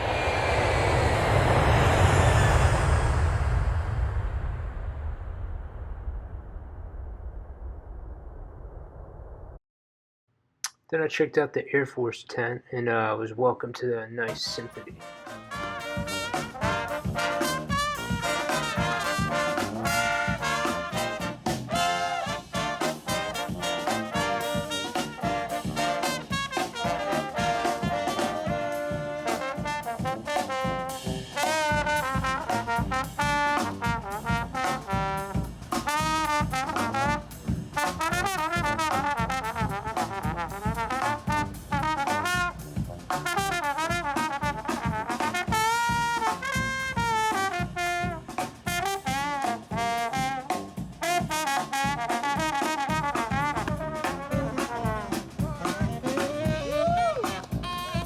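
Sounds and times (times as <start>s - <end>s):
brass band playing jazz: 14.3s - 58.0s.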